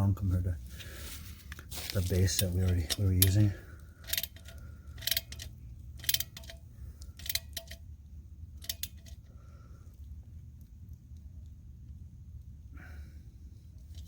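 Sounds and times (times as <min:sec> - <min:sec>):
steady low hum: 0:00.0 - 0:14.0
wrench clicking: 0:02.3 - 0:07.8, 0:08.6 - 0:09.2.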